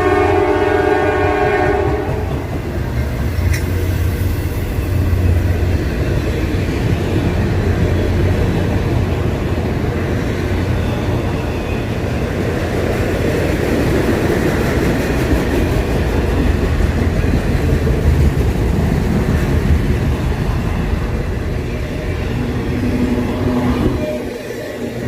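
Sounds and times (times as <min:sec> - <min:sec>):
locomotive horn chord: 0:00.0 - 0:02.3
train passing rumble: 0:00.0 - 0:25.0.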